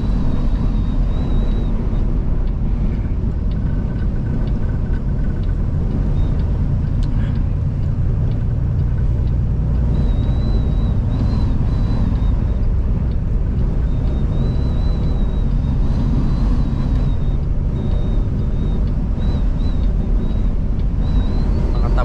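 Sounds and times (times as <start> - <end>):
faint wavering whistle: 0.0 - 3.2, 9.8 - 22.0
truck engine and road rumble: 0.0 - 22.0
wind against cab: 0.0 - 22.0.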